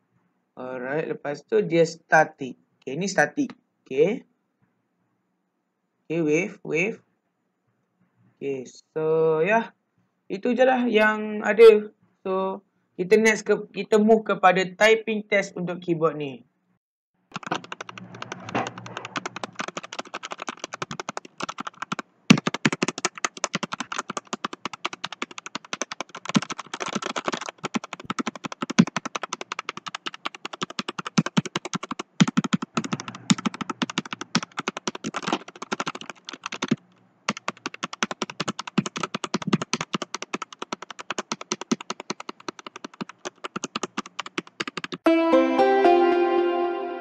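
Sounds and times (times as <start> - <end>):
mechanical keyboard typing: 17.3 - 45.0.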